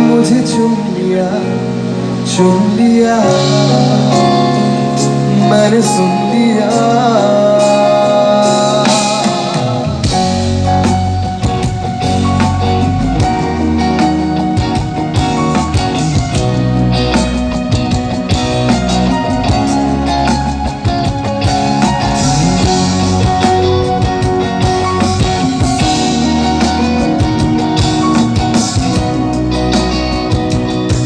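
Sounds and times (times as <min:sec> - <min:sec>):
guitar: 0:00.0 - 0:31.0
drum beat: 0:08.7 - 0:31.0.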